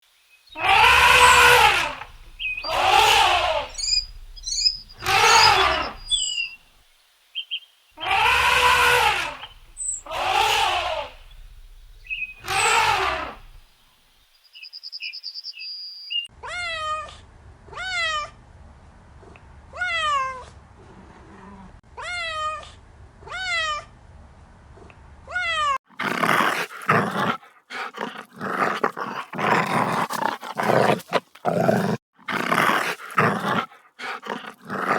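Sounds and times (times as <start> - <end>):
short high falling calls: 0.5 - 6.7, 7.4 - 13.7
faint chirps: 0.5 - 16.3
cat meowing: 0.6 - 6.5
rough growling: 0.6 - 6.8, 8.0 - 13.8, 25.9 - 34.9.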